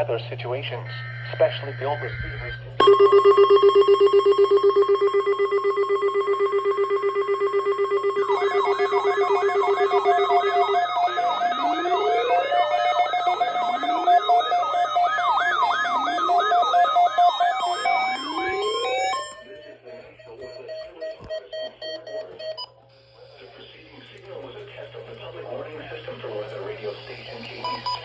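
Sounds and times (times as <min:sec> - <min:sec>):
steady alarm tone: 0:00.7 - 0:22.7
siren-like warbles: 0:00.9 - 0:20.9
pulsing buzzing alarm tone: 0:00.9 - 0:22.6
slow rising wails: 0:08.4 - 0:19.2.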